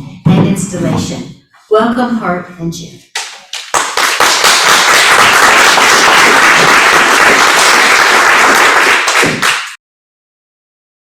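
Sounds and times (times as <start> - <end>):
audience applauding: 3.5 - 9.8.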